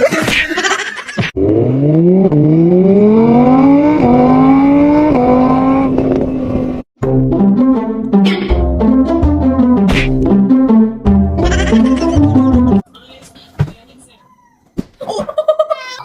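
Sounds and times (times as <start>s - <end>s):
car engine accelerating: 1.4s - 6.9s.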